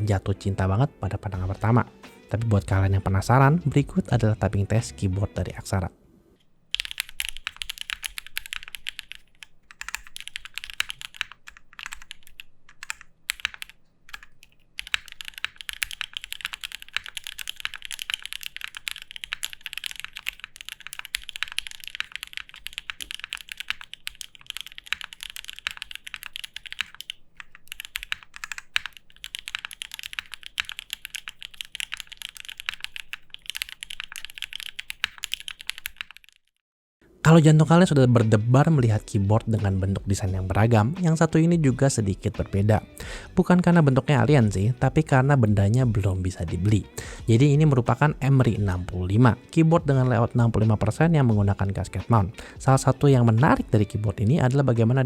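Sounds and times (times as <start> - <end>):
mechanical keyboard typing: 6.7 - 36.6.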